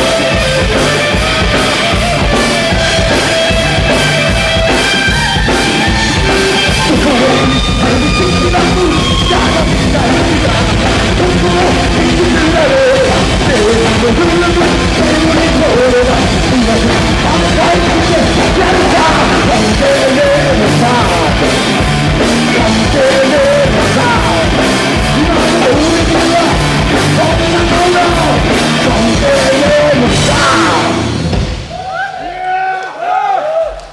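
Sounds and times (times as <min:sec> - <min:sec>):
punk rock band playing: 0:00.0 - 0:32.1
shouted vocals: 0:29.3 - 0:31.1, 0:31.7 - 0:33.9.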